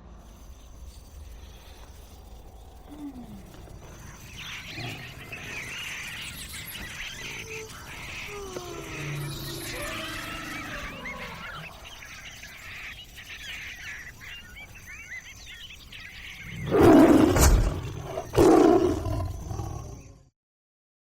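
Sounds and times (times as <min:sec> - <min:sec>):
faint bird chirps: 0:00.1 - 0:20.2
big cat roaring: 0:02.6 - 0:12.1, 0:16.4 - 0:20.3.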